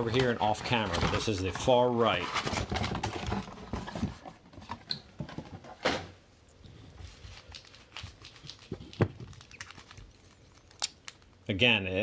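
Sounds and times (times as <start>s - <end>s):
packaging rustling and clicking: 0.0s - 5.0s, 7.1s - 11.3s.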